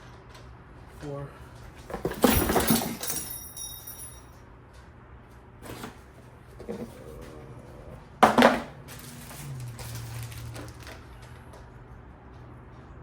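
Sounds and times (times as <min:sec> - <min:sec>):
small hard parts clattering: 0:01.8 - 0:04.3, 0:08.2 - 0:11.6.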